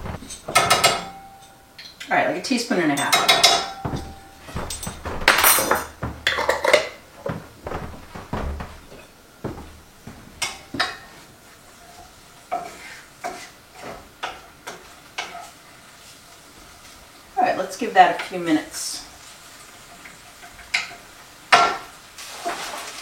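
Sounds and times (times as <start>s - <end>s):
onions sizzling: 9.0s - 23.0s
metal spoon scraping a skillet: 11.9s - 14.4s.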